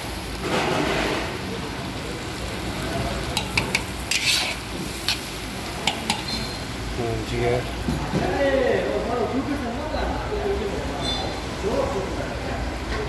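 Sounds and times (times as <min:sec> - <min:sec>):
liver sizzling in a pan: 0:00.0 - 0:12.9
utensil clicking against pan: 0:03.3 - 0:06.4
utensil scraping pan: 0:03.4 - 0:06.6.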